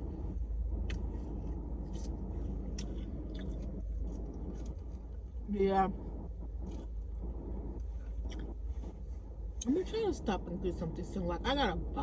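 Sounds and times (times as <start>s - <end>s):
low rumble: 0.0s - 12.0s
person chewing food: 0.8s - 5.1s, 6.6s - 7.0s, 8.0s - 8.6s.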